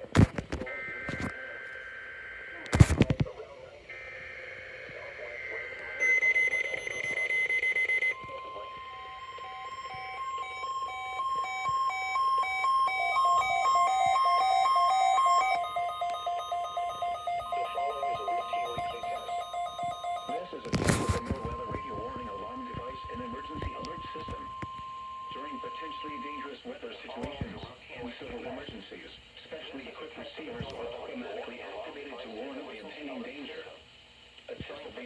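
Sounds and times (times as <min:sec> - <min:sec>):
radio static: 0:00.0 - 0:33.8
rapid beeping: 0:03.9 - 0:26.5
warning alarm tone: 0:05.9 - 0:26.4.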